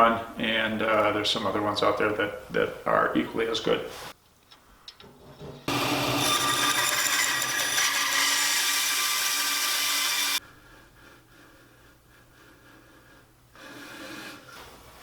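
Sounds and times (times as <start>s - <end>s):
band saw cutting wood: 5.7s - 10.4s.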